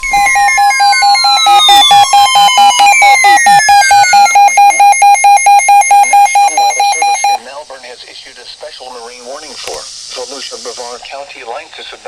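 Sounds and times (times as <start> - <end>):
falling sweeping tones: 0.0 - 5.8
electronic alert tone beeping rapidly: 0.0 - 7.4.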